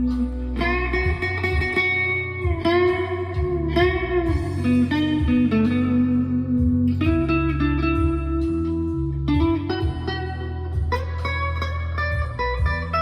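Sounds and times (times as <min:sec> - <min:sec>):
overdriven electric guitar lead: 0:00.0 - 0:13.0.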